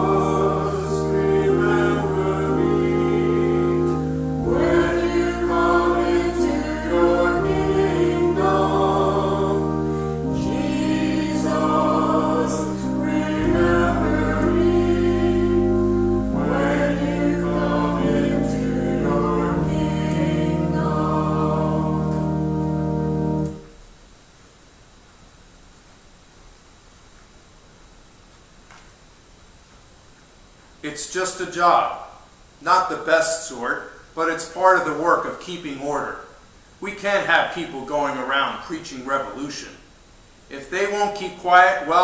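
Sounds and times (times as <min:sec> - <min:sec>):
choir singing: 0:00.0 - 0:23.7.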